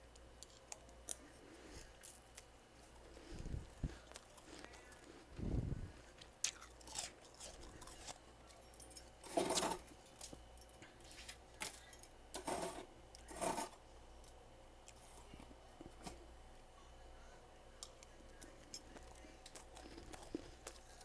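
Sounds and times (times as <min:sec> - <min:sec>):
person chewing icy frost: 0:00.2 - 0:08.6, 0:17.8 - 0:21.0.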